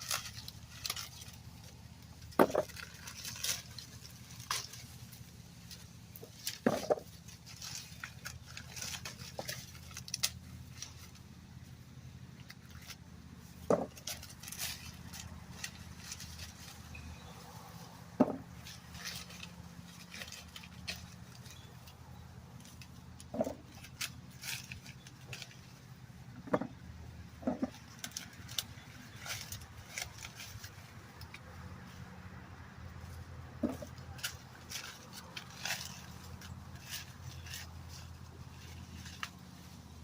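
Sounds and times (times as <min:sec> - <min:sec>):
dry corn husks rustling: 0:00.0 - 0:40.0
corn ears landing with thuds: 0:02.3 - 0:03.5, 0:06.2 - 0:07.2, 0:18.2 - 0:18.7.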